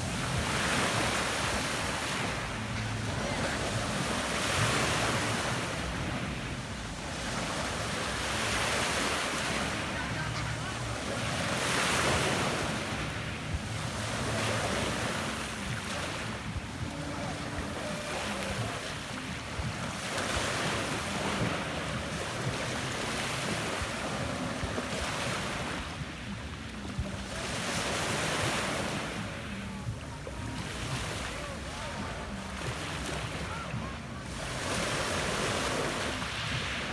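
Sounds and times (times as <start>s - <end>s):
waves washing onto pebble beach: 30.4s - 36.9s.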